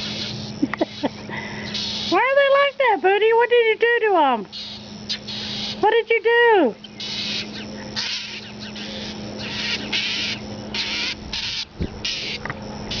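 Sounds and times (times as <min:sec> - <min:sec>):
birds harsh scolding calls: 0:06.8 - 0:13.0.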